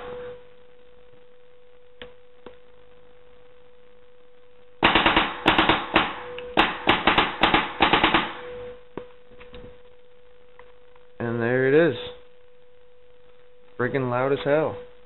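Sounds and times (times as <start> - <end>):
rapid sharp air blasts: 4.8 - 8.5.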